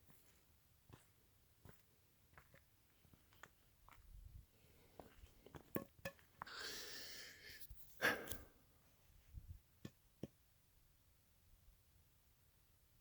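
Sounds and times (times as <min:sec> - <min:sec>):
person breathing: 0:04.5 - 0:05.6, 0:06.4 - 0:08.6.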